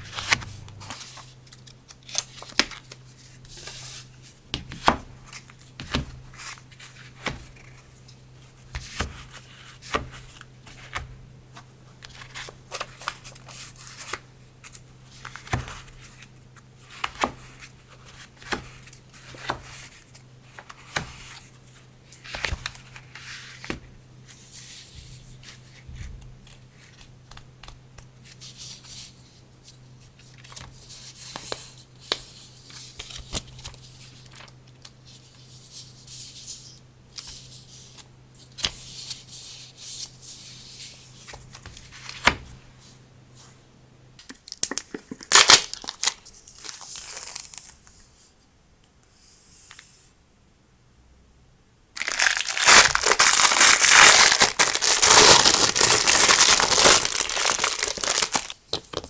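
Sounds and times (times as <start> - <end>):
steady low hum: 0.0 - 2.1
paper rustling: 0.0 - 21.6, 52.0 - 59.0.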